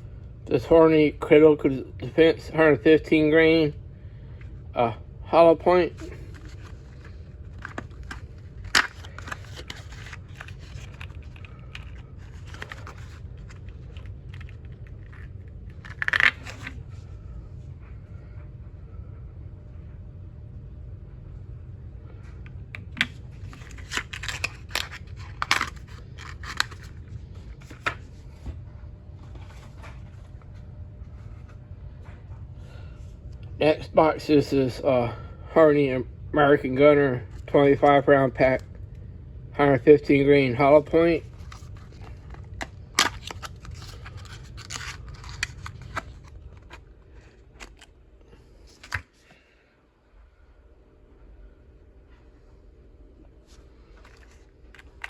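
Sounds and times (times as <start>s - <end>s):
low steady hum: 0.0s - 55.0s
ammunition boxes being handled: 5.9s - 16.8s, 22.8s - 27.0s, 41.2s - 47.9s, 53.9s - 55.0s
cardboard rubbing: 6.0s - 16.8s, 23.5s - 26.9s, 43.0s - 46.8s.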